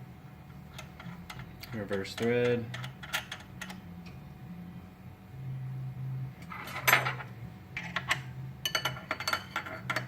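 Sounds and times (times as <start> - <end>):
low hum: 2.7 - 10.0.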